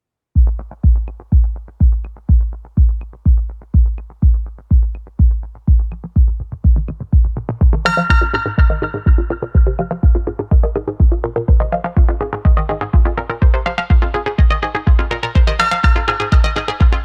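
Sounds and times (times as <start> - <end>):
kick drum beat: 0.4 - 17.0
sustained synthesizer chord: 7.8 - 17.0.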